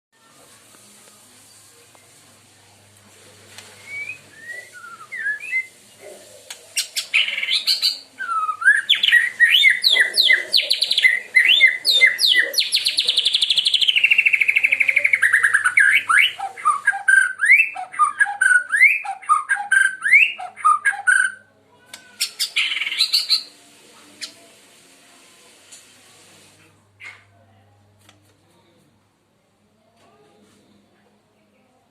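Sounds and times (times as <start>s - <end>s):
bird singing varied song: 6.8s - 21.4s.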